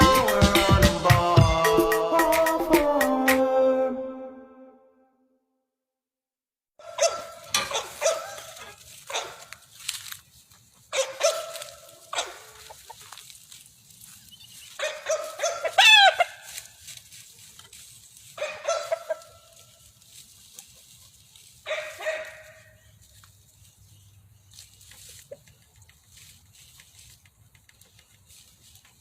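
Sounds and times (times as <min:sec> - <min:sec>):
rooster crowing: 0:06.8 - 0:09.3, 0:14.8 - 0:16.5, 0:18.4 - 0:19.6
farmyard animals calling: 0:06.8 - 0:29.0.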